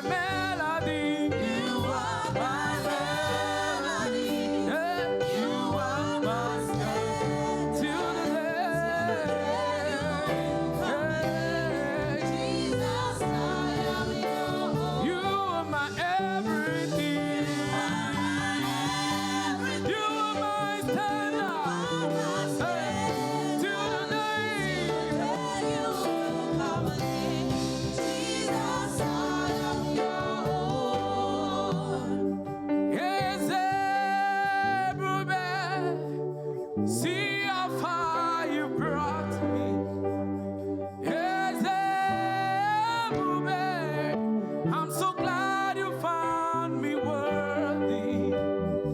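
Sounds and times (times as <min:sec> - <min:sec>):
instrumental accompaniment: 0:00.0 - 0:34.8
choir singing gospel song: 0:00.0 - 0:48.9.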